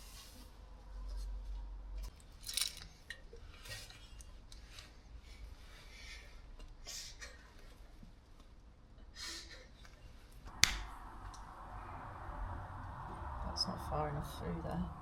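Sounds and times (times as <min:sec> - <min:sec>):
metal tools clinking and scraping: 0:02.2 - 0:04.2
low hum: 0:10.5 - 0:15.0.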